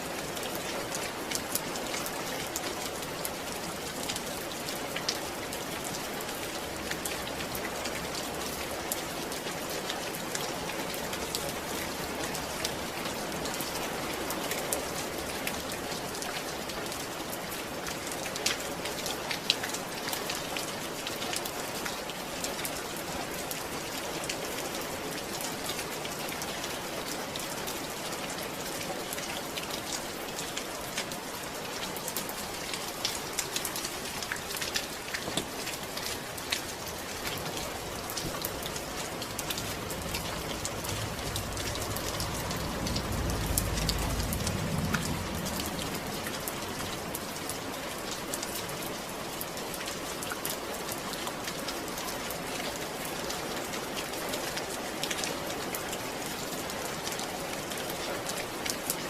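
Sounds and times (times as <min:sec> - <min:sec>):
rain falling: 0:00.0 - 0:59.0
raindrops pattering: 0:00.0 - 0:59.0.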